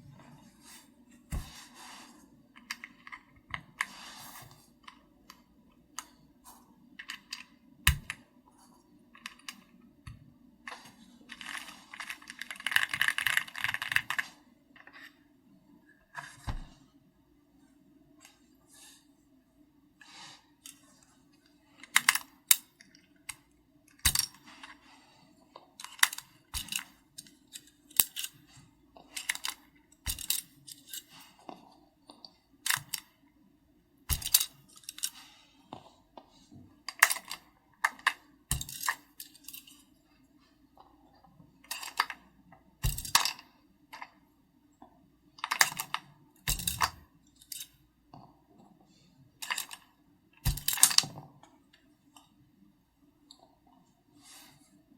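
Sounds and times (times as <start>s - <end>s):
mechanical keyboard typing: 11.3s - 14.2s.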